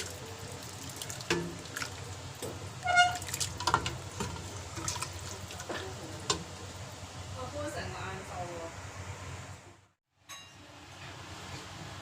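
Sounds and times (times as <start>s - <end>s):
utensils and cookware clinking: 1.2s - 6.5s, 10.2s - 11.2s.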